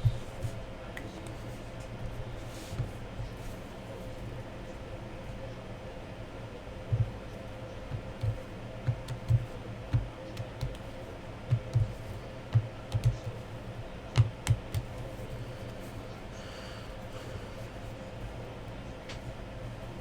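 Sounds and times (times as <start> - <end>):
faint steady hum: 0.0 - 20.0
computer keyboard typing: 8.2 - 10.8, 11.5 - 13.3.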